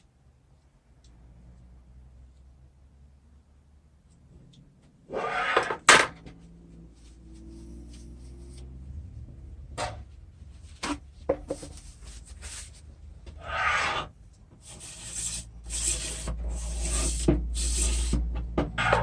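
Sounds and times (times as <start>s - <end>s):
rough rubbing and scraping strokes: 5.1s - 5.8s, 6.9s - 8.8s, 10.5s - 18.2s.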